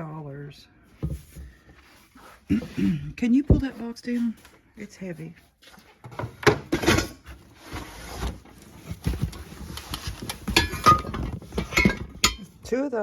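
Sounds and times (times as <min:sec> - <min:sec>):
hard contents knocking and clinking: 0:10.0 - 0:12.6.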